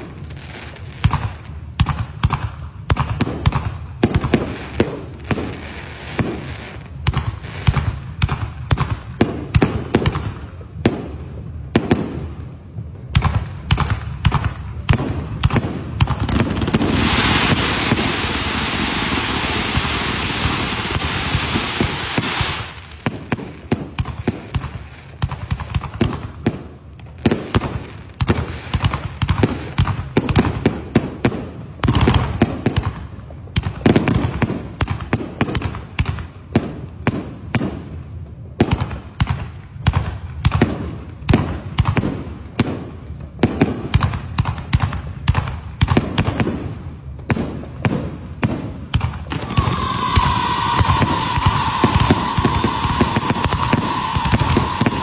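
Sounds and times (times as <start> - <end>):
firecracker cracks and pops: 0.0 - 55.0
firework hissing: 16.3 - 25.2, 49.3 - 55.0.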